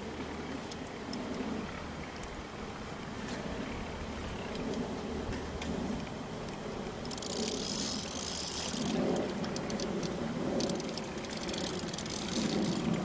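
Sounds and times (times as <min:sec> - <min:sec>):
fishing line hissing: 0:07.0 - 0:13.0
fishing reel clicking: 0:07.0 - 0:13.0.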